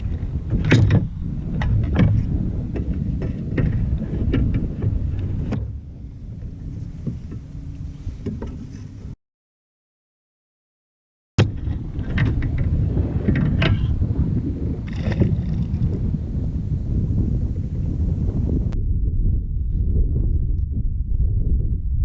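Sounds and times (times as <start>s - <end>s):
knocks and clicks from hull: 0.0s - 5.8s, 6.4s - 7.5s, 8.2s - 8.9s, 11.4s - 14.0s
low rumbling noise: 0.0s - 9.2s, 11.4s - 22.0s.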